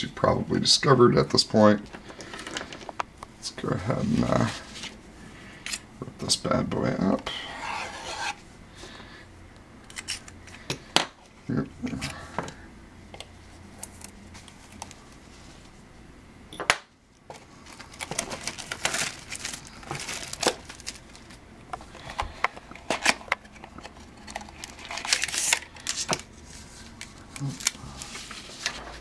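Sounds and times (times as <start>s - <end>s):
plastic packaging crinkling: 17.3s - 21.4s, 22.0s - 29.0s.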